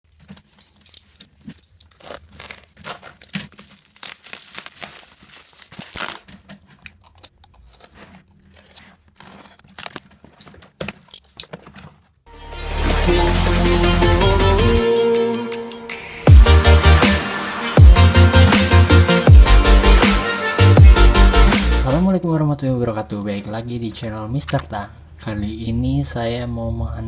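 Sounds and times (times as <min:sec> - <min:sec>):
packaging crinkling and tearing: 0:00.0 - 0:12.2.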